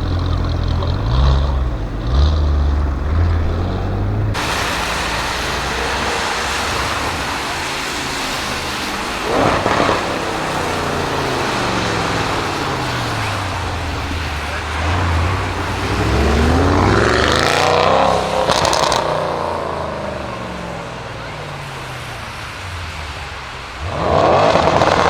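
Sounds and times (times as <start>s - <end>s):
car engine revving: 0.0s - 25.0s.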